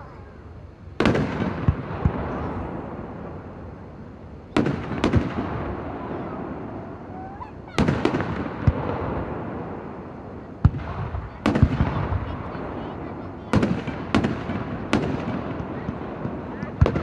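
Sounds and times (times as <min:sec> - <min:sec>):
fireworks booming: 0:00.0 - 0:17.0
fireworks crackling: 0:00.0 - 0:17.0
rumbling echo: 0:01.0 - 0:17.0.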